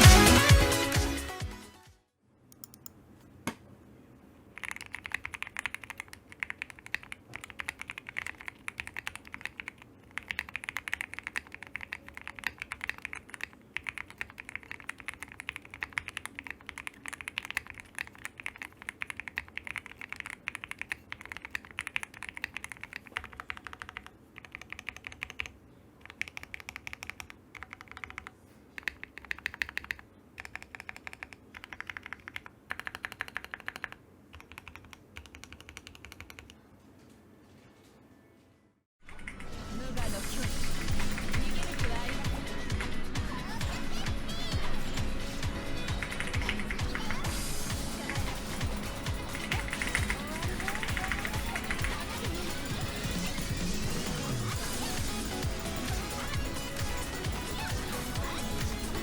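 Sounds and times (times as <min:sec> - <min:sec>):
typing on mechanical keyboard: 0:04.5 - 0:36.6, 0:45.8 - 0:47.3, 0:47.9 - 0:59.0.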